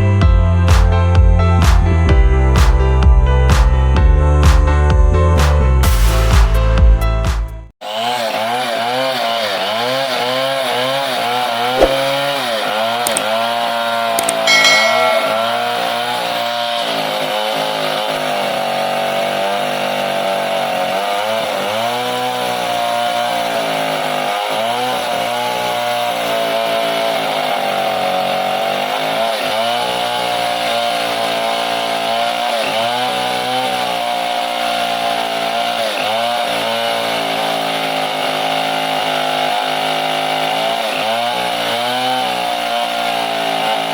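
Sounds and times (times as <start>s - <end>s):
chainsaw cutting wood: 7.8s - 15.2s, 16.4s - 43.9s
short sharp knock: 11.8s - 12.1s.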